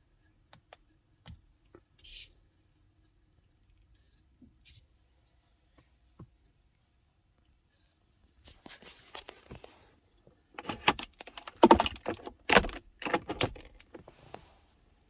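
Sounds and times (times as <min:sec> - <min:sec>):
plastic gadget clicking and rattling: 0:10.6 - 0:14.0.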